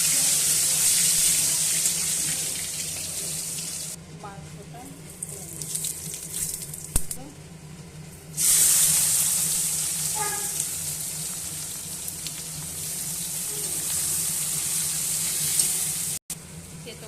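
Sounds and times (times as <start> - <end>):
food sizzling in hot oil: 0.0 - 4.0, 8.4 - 16.3.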